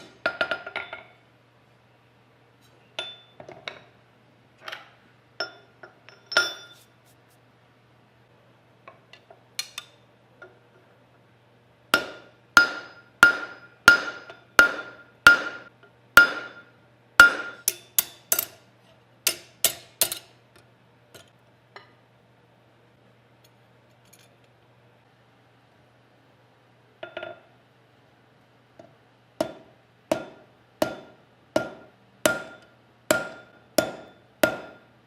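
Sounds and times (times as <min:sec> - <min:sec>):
hammer striking metal: 0:12.0 - 0:18.6, 0:29.4 - 0:34.9.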